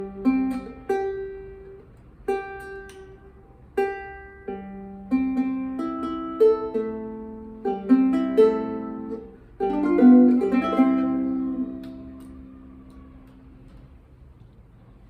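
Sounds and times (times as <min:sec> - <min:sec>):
small guitar plucked chords: 0:00.0 - 0:13.6.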